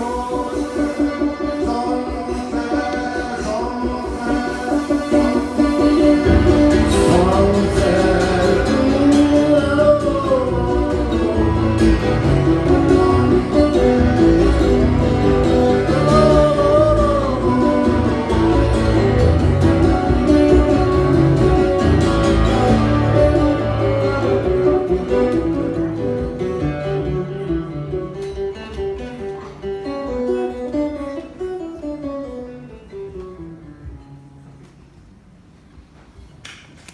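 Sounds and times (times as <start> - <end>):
person singing long notes: 0.0 - 27.4
low heavy accompaniment: 0.0 - 29.5
guitar accompaniment: 0.0 - 36.9.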